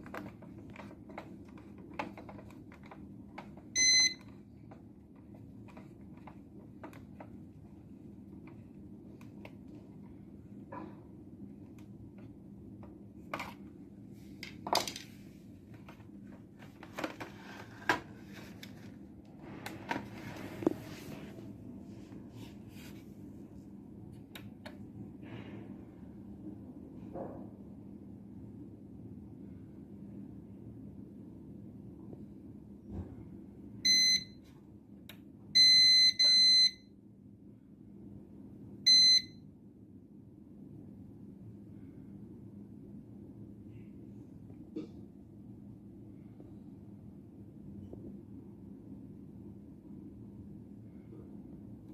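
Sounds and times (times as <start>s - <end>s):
faint steady hum: 0.0s - 51.9s.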